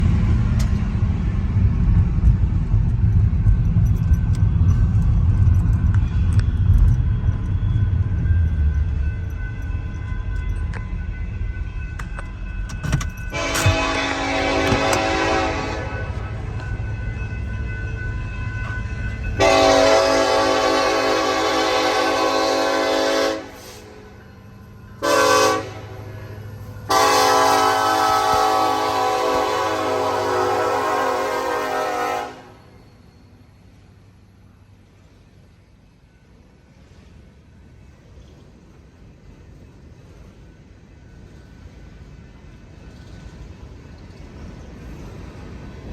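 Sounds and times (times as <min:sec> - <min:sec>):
deep train rumble: 0:00.0 - 0:45.9
locomotive air horn blasts: 0:13.3 - 0:16.3, 0:19.4 - 0:24.2, 0:25.0 - 0:32.7.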